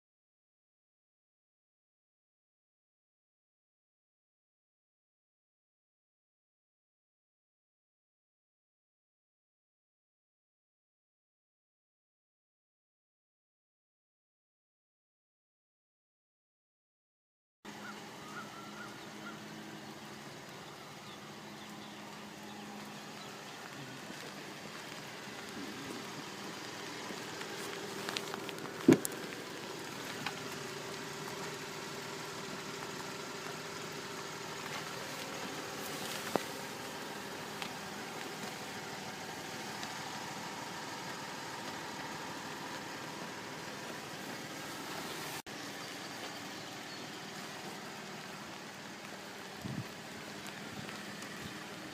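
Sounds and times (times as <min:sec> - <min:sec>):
vehicle engine idling: 0:17.7 - 0:51.9.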